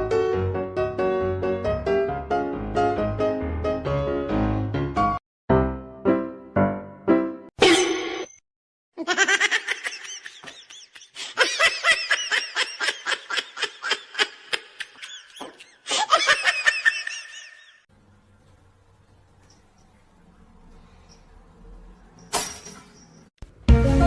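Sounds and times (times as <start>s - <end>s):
high-pitched laughter: 9.0s - 17.8s.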